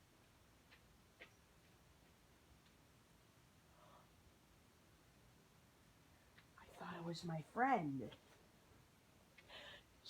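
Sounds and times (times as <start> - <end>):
faint ticks: 0.0 - 3.0, 6.2 - 6.8.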